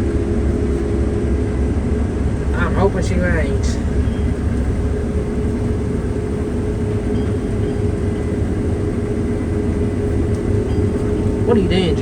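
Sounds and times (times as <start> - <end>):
combine harvester running: 0.0 - 12.0.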